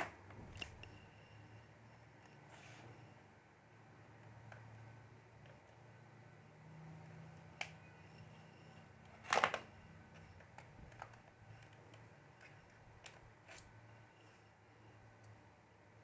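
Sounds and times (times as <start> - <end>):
laptop plastic and metal rattling: 9.2 - 9.8.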